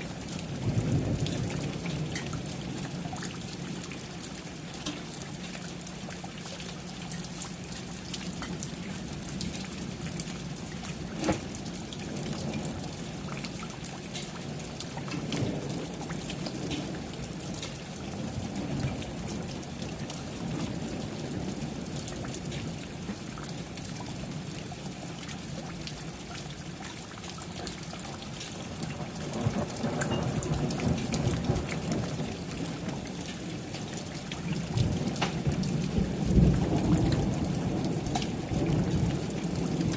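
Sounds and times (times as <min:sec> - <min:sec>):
steady rain falling: 0:00.0 - 0:39.9
rolls of thunder: 0:34.5 - 0:39.9.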